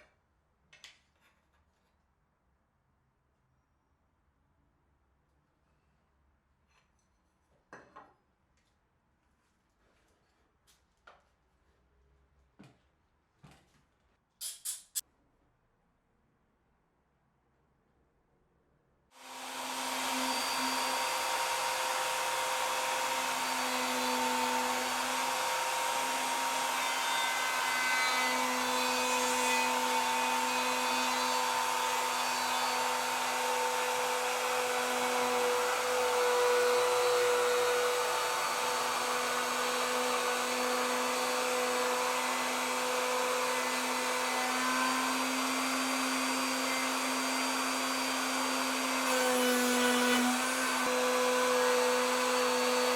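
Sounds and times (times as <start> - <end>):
router motor whining: 19.2 - 52.9.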